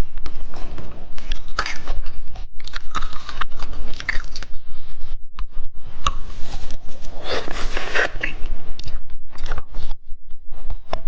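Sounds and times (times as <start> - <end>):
hard candy crunching: 1.1 - 4.6.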